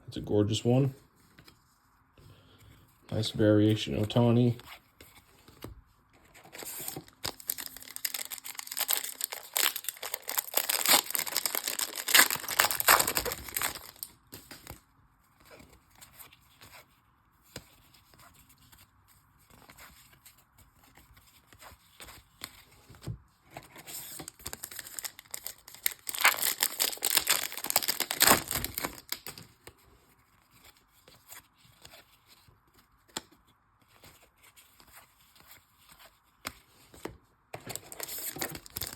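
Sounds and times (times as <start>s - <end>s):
wrapper rustling: 6.5s - 14.1s, 24.2s - 29.4s, 37.6s - 38.9s
card pack wrappers tearing: 6.6s - 14.1s, 24.1s - 29.4s, 37.6s - 38.9s.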